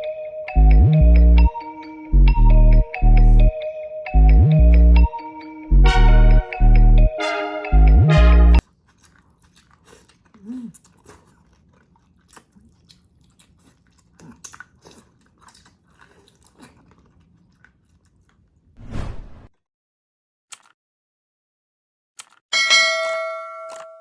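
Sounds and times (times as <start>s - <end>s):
person chewing food: 8.6s - 18.7s.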